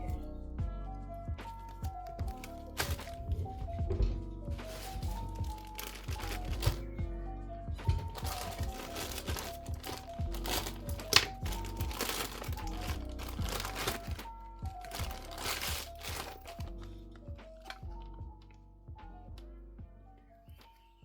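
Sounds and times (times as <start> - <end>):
lo-fi music with soft beat: 0.0 - 21.0
packaging crinkling: 1.6 - 3.4, 4.6 - 6.9, 7.8 - 16.9.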